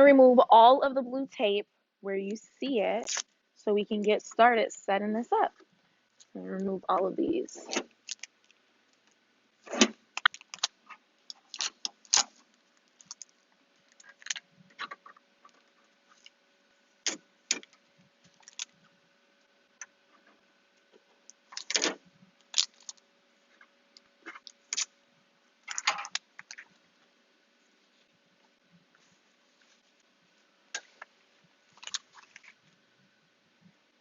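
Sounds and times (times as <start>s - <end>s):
tape crackling and tearing: 3.0s - 3.3s, 7.6s - 14.9s, 17.0s - 18.8s, 21.5s - 23.0s, 24.3s - 24.9s, 31.8s - 32.6s.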